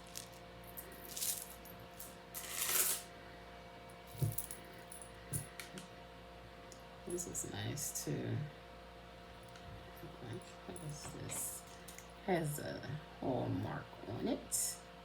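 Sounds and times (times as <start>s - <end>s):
metal jewelry clinking: 0.0s - 3.1s, 4.1s - 5.7s.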